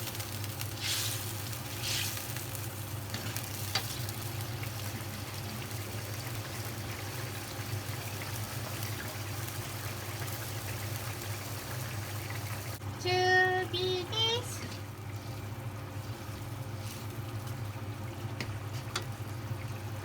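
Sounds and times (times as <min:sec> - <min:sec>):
sauce simmering and sizzling: 0:00.0 - 0:20.0
stirring swishes: 0:00.7 - 0:02.4, 0:14.6 - 0:17.6.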